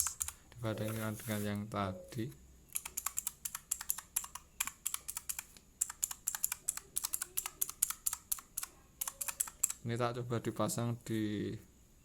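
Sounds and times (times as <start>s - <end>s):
rapid mechanical keyboard typing: 0.0s - 0.4s, 2.8s - 9.8s.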